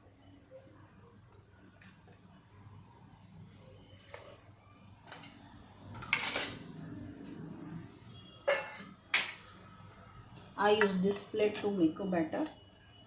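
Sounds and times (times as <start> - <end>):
dishes and cutlery clattering: 8.5 - 9.6
sharp ringing clink: 9.2 - 9.5.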